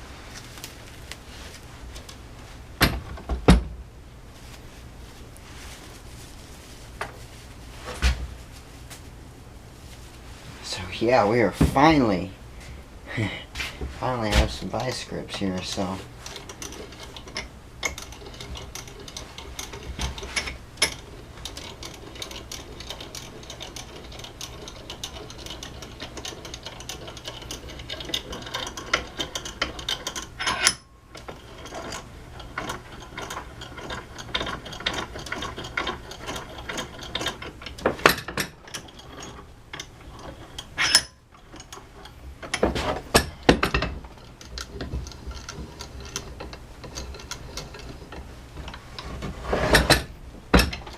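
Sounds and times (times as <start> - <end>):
metal tool clicks and ratcheting: 16.3 - 48.8.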